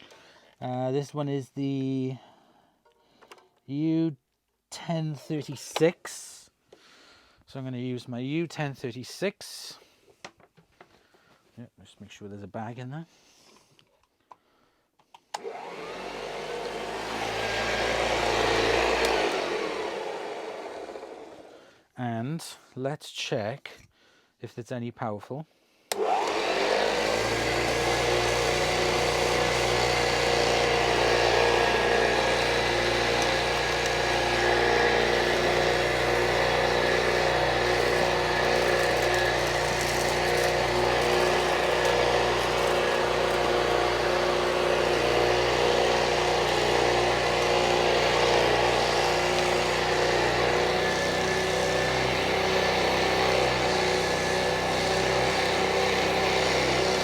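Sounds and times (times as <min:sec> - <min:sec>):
vacuum cleaner motor whining: 0:15.4 - 0:21.5, 0:25.9 - 0:57.0.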